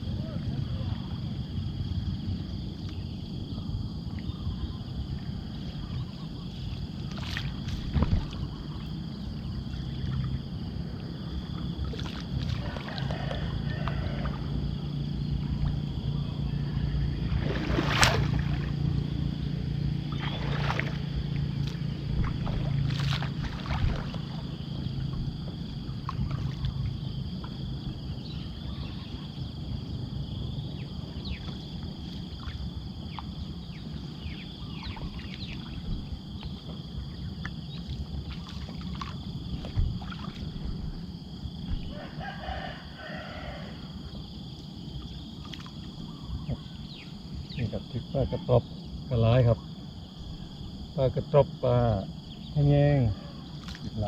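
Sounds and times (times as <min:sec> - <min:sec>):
low rumbling noise: 0:00.0 - 0:53.4
rooster crowing: 0:12.5 - 0:15.1, 0:41.9 - 0:44.1.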